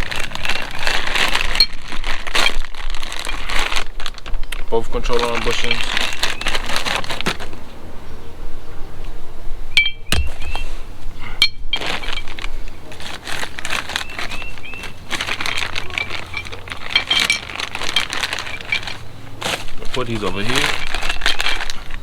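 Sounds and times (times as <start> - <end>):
packaging rustling: 0.0 - 7.6, 11.7 - 22.0
parts clinking and knocking: 9.8 - 10.6, 11.4 - 12.5, 14.9 - 21.8.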